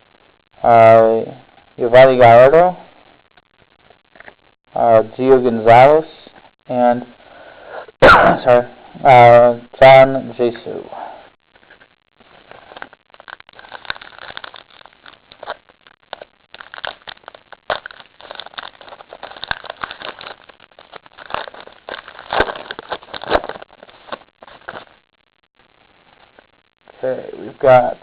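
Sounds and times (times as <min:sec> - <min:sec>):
foil wrapper crinkling: 0:11.6 - 0:25.1.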